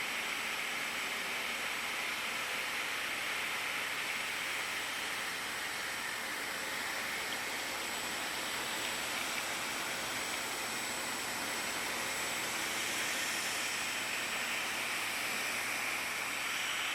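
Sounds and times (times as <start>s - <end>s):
machining equipment hiss: 11.7s - 16.9s.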